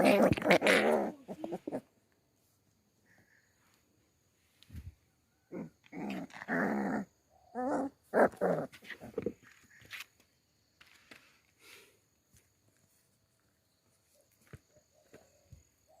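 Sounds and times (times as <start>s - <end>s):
puppy growling: 0.0s - 1.9s, 5.5s - 9.3s.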